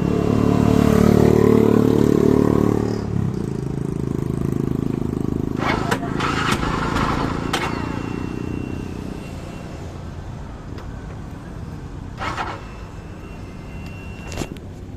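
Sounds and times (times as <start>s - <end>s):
motorcycle engine running: 0.0s - 8.3s.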